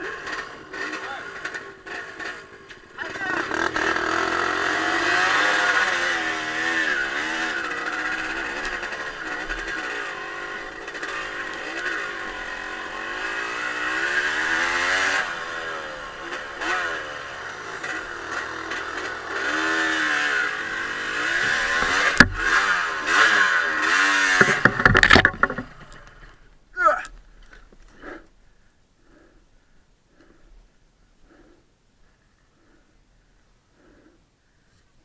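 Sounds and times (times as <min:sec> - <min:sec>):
motorcycle engine revving: 0:00.0 - 0:26.4.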